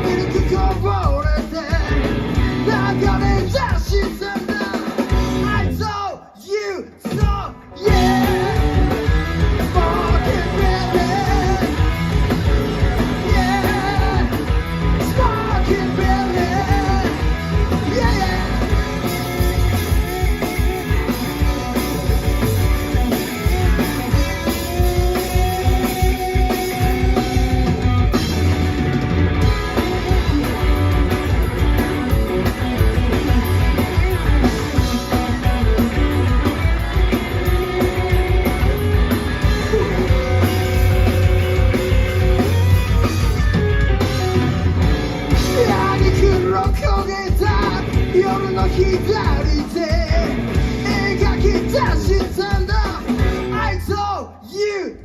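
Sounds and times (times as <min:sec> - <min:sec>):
rock band playing: 0:00.0 - 0:55.0
person singing: 0:02.6 - 0:11.9, 0:13.0 - 0:19.7, 0:45.3 - 0:54.9.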